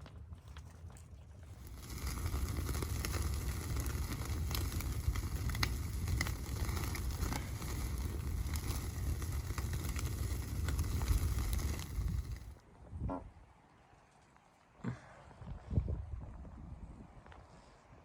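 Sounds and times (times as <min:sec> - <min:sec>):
crackles and clicks: 0:00.0 - 0:12.6
wind rumble on microphone: 0:00.0 - 0:13.5, 0:15.2 - 0:18.0.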